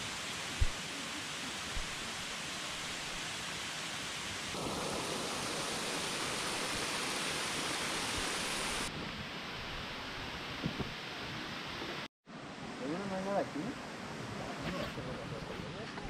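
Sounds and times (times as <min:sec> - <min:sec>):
waterfall rushing: 0:00.0 - 0:12.1.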